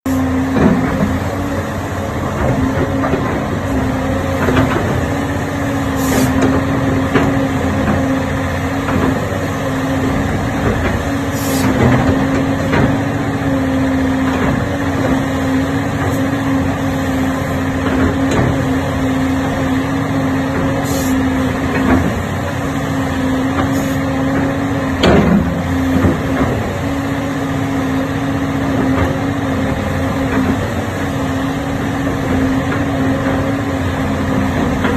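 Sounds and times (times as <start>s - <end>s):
constant whine: 0.0s - 34.9s
excavator diesel engine running: 0.0s - 34.9s
sharp knocks: 25.0s - 26.6s.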